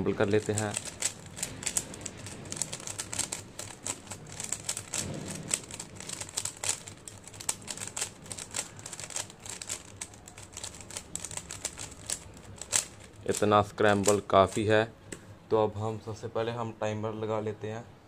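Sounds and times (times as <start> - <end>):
plastic puzzle cube clicking: 0.2 - 14.6.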